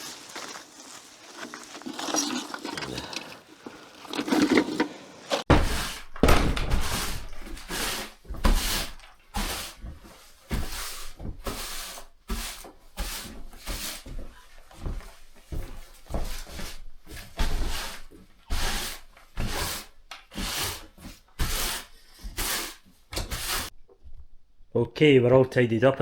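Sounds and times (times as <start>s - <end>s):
scraping and knocking in fire pit: 0.0s - 9.9s.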